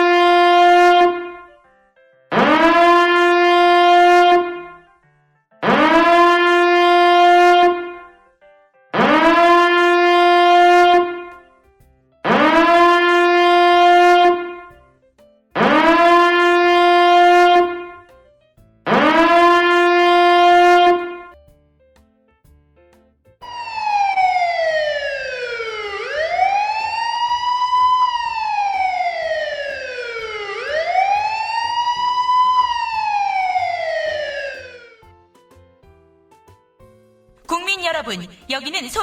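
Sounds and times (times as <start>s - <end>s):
short siren blasts: 0.0s - 1.5s, 2.3s - 4.9s, 5.6s - 8.2s, 9.0s - 11.5s, 12.2s - 14.8s, 15.6s - 18.1s, 18.9s - 21.4s, 23.4s - 35.1s
wailing siren: 0.0s - 1.5s, 2.3s - 4.9s, 5.6s - 8.1s, 9.0s - 11.5s, 12.2s - 14.8s, 15.6s - 18.1s, 18.9s - 21.4s, 23.4s - 35.1s.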